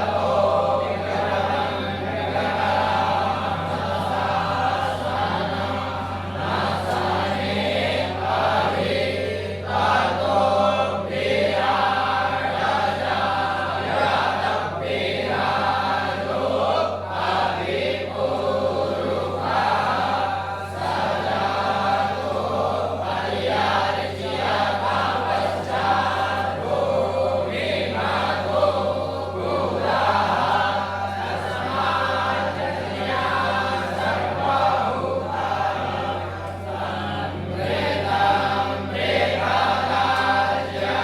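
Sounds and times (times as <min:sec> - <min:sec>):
voices chanting in unison: 0:00.0 - 0:41.0.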